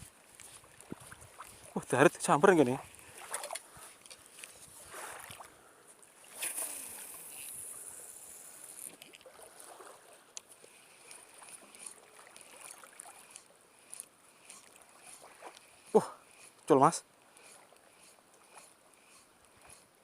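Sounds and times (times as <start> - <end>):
light water sounds: 0.0 - 20.0.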